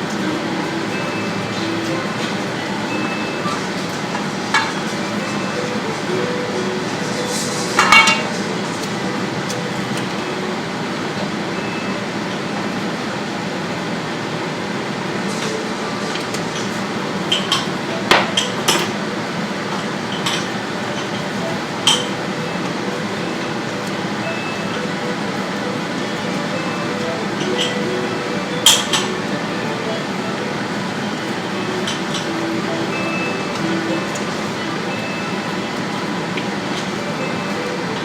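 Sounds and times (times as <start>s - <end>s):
dishes and utensils clinking: 0.9s - 10.1s, 21.8s - 22.3s, 26.3s - 29.2s.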